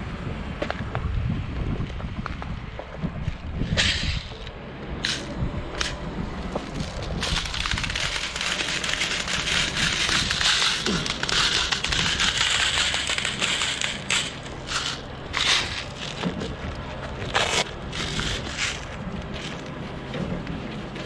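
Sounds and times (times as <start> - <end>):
crackling rustling noise: 4.3 - 20.8.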